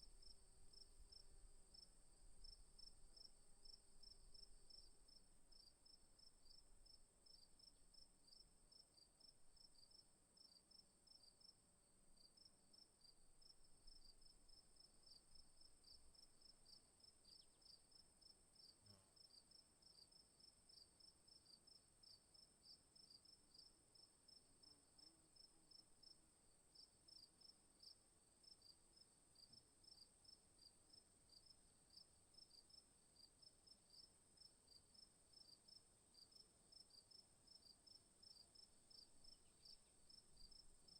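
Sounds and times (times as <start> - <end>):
insects chirping: 35.4 - 40.9.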